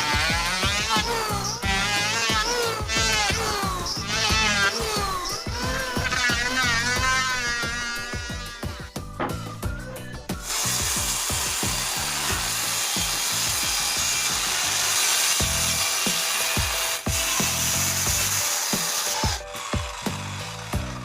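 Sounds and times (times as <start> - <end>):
power tool cutting wood: 0.0 - 21.0
background music with low beat: 0.1 - 14.6.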